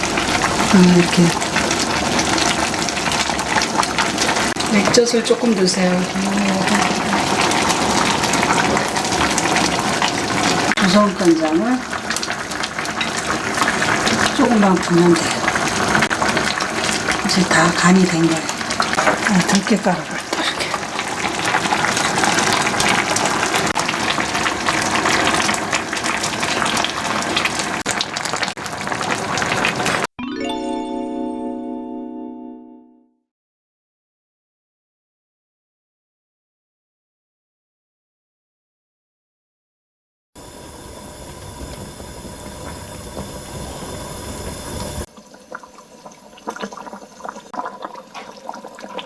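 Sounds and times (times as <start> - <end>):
soup boiling and bubbling: 0.0 - 30.1, 40.4 - 49.0
ringing musical chime: 30.2 - 33.2.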